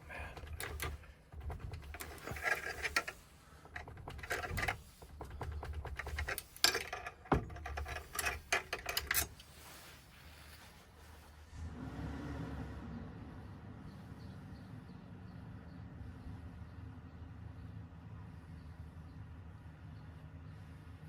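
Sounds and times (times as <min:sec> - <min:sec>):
metal clicks and taps: 0:00.2 - 0:09.5.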